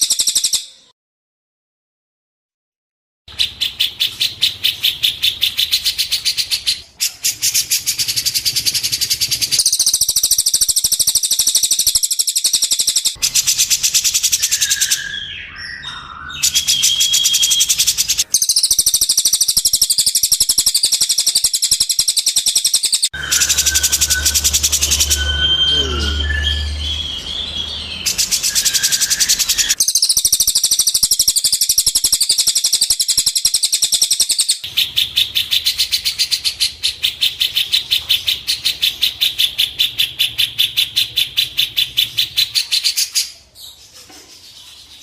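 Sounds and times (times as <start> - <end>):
songbird trilling: 3.3 - 43.4
short whistled bird notes: 23.2 - 29.9.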